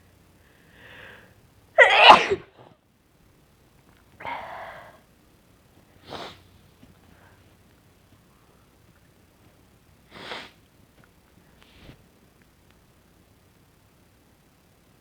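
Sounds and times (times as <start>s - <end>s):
soft breathing: 0.4s - 1.4s, 4.2s - 5.0s
woman sneezing: 1.8s - 2.5s.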